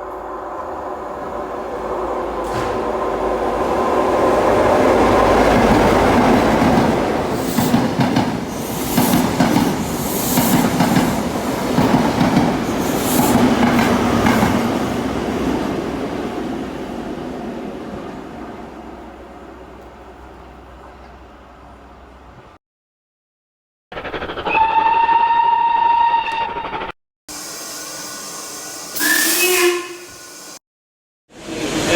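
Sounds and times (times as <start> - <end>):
train clattering over rails: 0.0 - 22.2.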